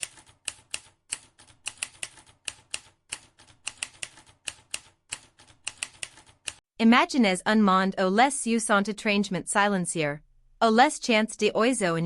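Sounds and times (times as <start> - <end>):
typewriter keys clacking: 0.0 - 6.6.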